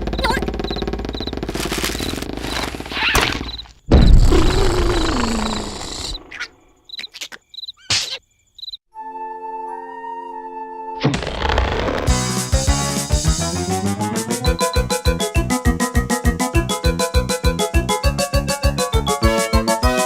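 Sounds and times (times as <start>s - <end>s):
crickets chirping: 0.7s - 8.8s
cartoon snoring: 4.2s - 6.2s
music: 8.9s - 11.2s, 11.8s - 20.0s.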